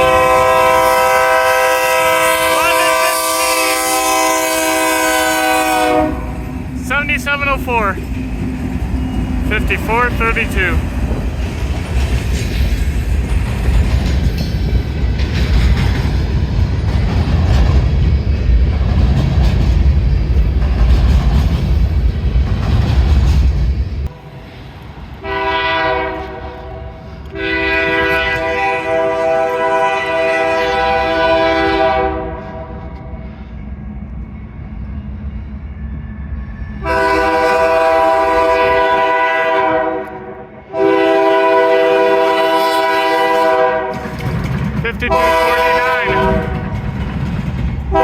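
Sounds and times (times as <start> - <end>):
locomotive air horn: 0.0 - 6.6, 25.2 - 32.9, 36.8 - 44.1, 45.0 - 46.8
train rumbling and clattering: 0.0 - 48.0.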